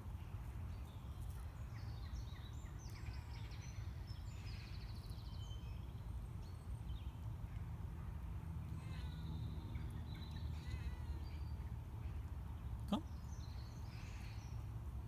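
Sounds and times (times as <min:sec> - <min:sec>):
songbirds chirping and singing: 0:08.8 - 0:14.7.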